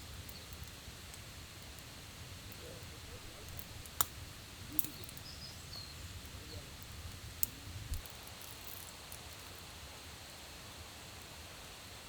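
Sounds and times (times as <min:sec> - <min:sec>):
burning wood popping: 0:00.0 - 0:09.3
campfire crackling: 0:00.0 - 0:12.0
fire hiss: 0:00.0 - 0:12.0.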